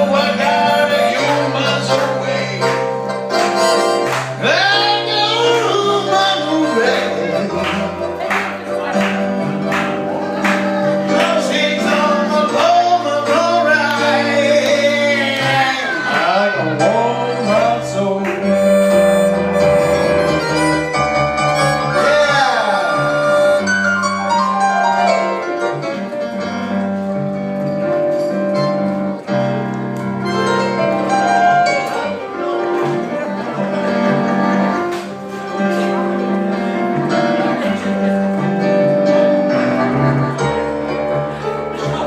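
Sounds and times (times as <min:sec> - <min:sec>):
bass line: 0:00.0 - 0:01.9, 0:18.5 - 0:23.9
keyboard: 0:00.0 - 0:26.2.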